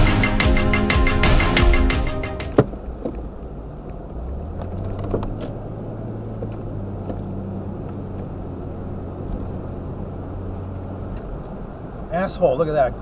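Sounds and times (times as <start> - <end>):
road noise: 0.0 - 13.0
car engine hum: 2.4 - 13.0.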